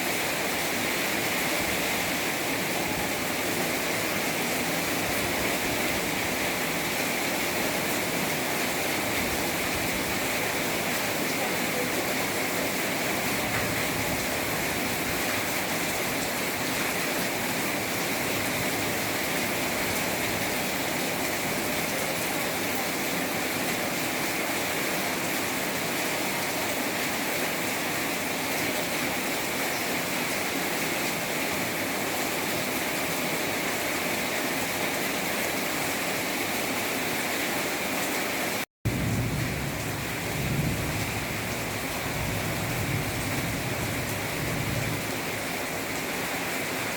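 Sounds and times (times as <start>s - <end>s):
heavy rain pouring: 0.0s - 46.9s.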